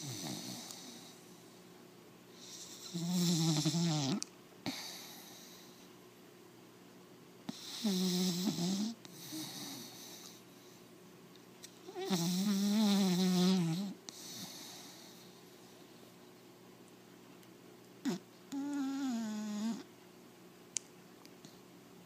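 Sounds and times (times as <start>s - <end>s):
puppy snoring: 0.0s - 1.3s, 2.4s - 5.9s, 7.5s - 10.5s, 11.8s - 15.4s, 18.0s - 19.9s.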